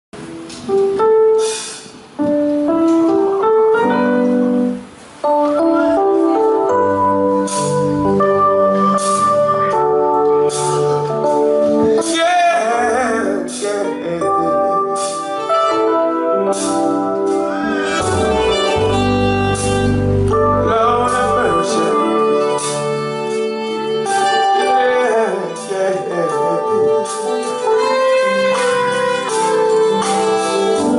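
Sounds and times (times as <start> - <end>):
keyboard playing piano chords: 0.2 - 30.9
deep bass line: 17.0 - 23.0.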